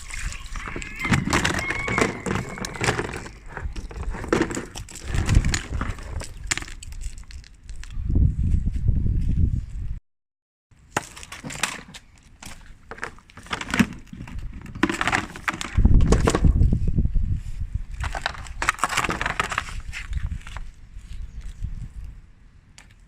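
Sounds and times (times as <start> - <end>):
ice cubes crunching and scraping: 0.0 - 7.9, 11.0 - 16.5, 18.0 - 20.7.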